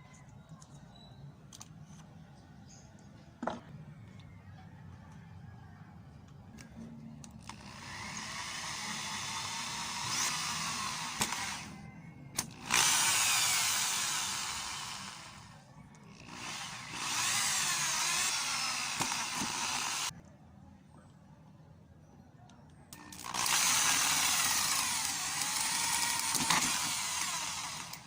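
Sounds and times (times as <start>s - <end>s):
power drill boring: 7.4s - 11.8s, 12.4s - 20.1s, 23.0s - 28.0s.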